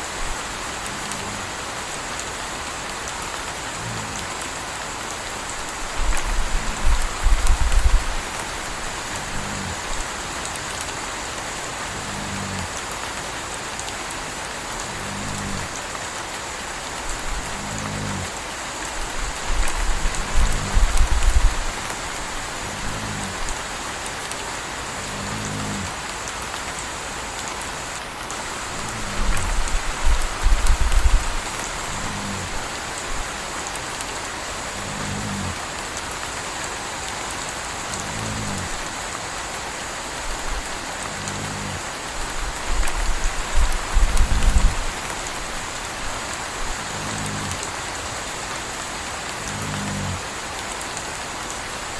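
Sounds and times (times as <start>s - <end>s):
steady rain: 0.0s - 51.9s
puppy snoring: 6.1s - 10.0s, 11.9s - 12.7s, 14.8s - 15.7s, 17.2s - 18.3s, 19.4s - 23.6s, 25.0s - 26.0s, 28.7s - 32.6s, 34.7s - 35.6s, 37.9s - 38.8s, 41.0s - 41.8s, 46.6s - 47.6s, 49.4s - 50.2s.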